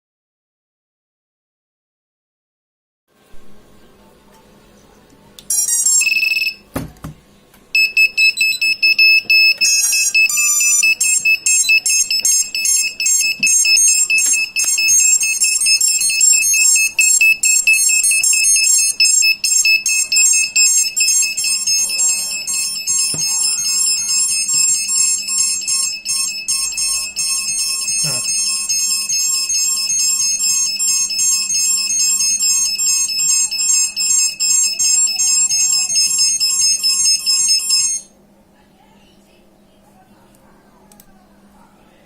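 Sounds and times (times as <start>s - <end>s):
rapid high-pitched beeping: 5.5s - 6.6s, 7.8s - 38.1s
motor stepped tones: 7.8s - 38.0s.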